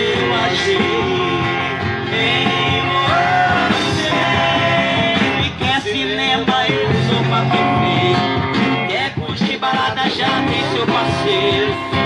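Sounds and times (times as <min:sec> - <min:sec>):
lead melody with sliding notes: 0:00.0 - 0:09.4
band accompaniment: 0:00.0 - 0:12.0.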